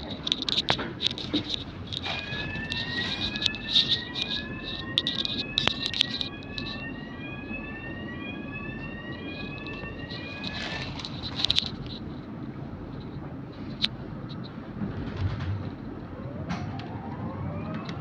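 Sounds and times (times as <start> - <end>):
light rattling clicks: 0.0 - 6.8, 9.4 - 12.2
electric bus whining: 0.0 - 18.0.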